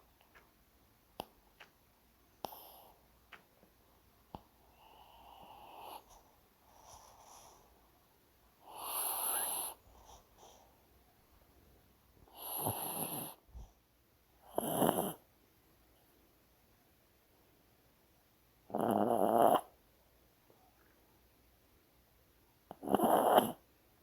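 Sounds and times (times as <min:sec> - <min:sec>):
dog snoring: 0:02.4 - 0:02.9, 0:04.8 - 0:06.2, 0:08.6 - 0:10.2, 0:12.3 - 0:13.7, 0:14.4 - 0:15.2, 0:18.7 - 0:19.7, 0:22.7 - 0:23.6.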